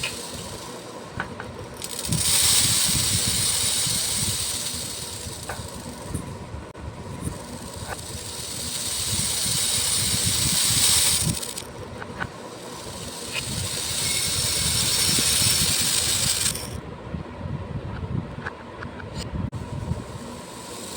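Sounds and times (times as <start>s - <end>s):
beads pouring and rattling: 0.0s - 6.2s, 7.1s - 16.8s, 20.2s - 20.9s.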